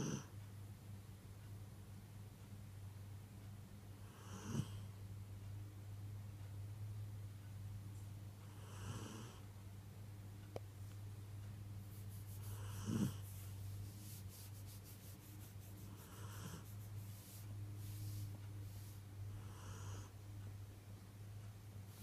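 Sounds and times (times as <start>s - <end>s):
steady low hum: 0.0s - 22.0s
person snoring: 12.5s - 13.2s.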